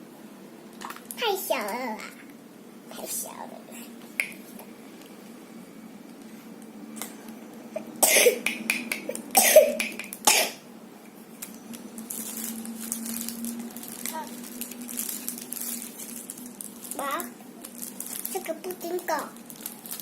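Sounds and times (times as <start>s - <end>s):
child coughing: 8.0s - 8.4s, 9.4s - 10.6s.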